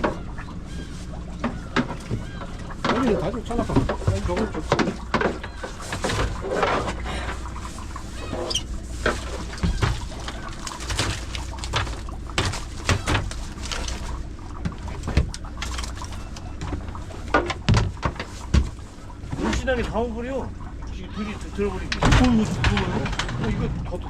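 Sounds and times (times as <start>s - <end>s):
boat engine humming: 0.0s - 24.0s
knocks and clatter on deck: 1.4s - 7.1s, 8.6s - 19.4s
short high squeaks: 8.2s - 8.8s.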